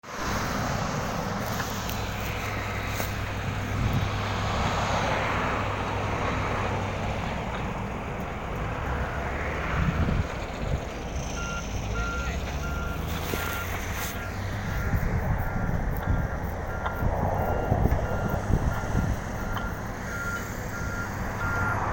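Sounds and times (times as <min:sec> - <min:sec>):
vehicle engine running: 0:00.0 - 0:21.9
short electronic beeps: 0:11.3 - 0:21.8.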